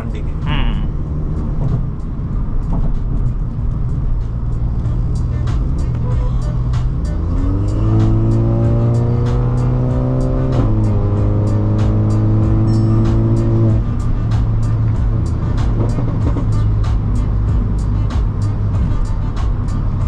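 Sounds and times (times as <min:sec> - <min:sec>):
car running and road noise: 0:00.0 - 0:20.0
music with heavy bass in car: 0:00.0 - 0:20.0.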